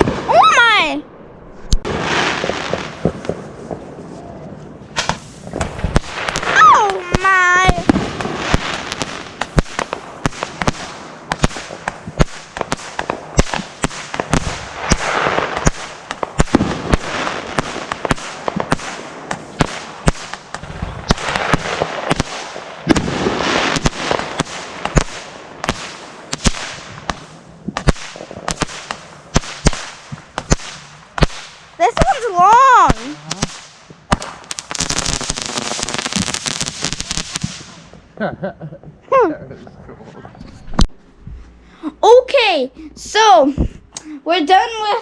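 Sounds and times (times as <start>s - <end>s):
fireworks popping and crackling: 1.6s - 38.2s
fireworks hissing: 4.9s - 38.1s.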